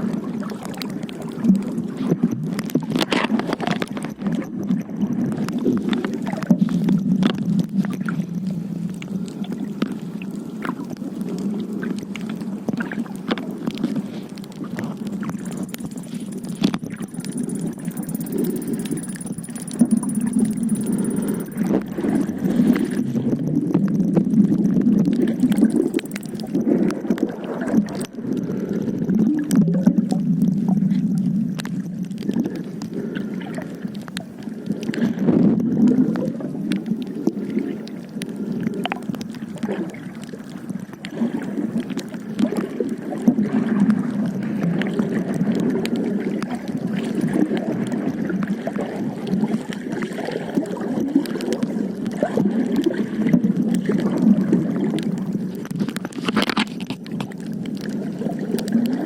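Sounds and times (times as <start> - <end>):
faint clicks: 5.4 - 23.0, 23.8 - 28.2.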